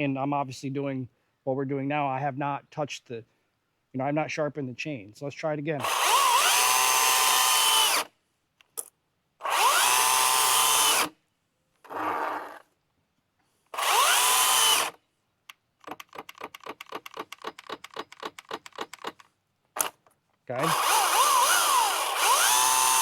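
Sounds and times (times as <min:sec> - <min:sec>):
electric chainsaw motor whining: 0:05.8 - 0:08.1, 0:09.4 - 0:11.1, 0:13.8 - 0:15.0, 0:20.6 - 0:23.0
motor stuttering pulses: 0:20.6 - 0:23.0.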